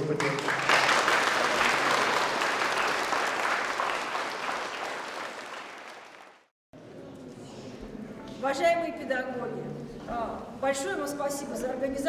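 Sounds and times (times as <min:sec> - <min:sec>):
audience applauding: 0:00.0 - 0:06.5.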